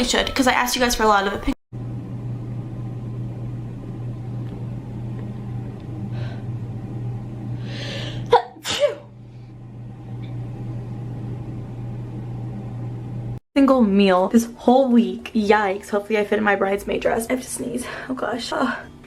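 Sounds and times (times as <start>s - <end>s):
steady low hum: 1.8s - 13.4s
woman sneezing: 8.3s - 9.1s.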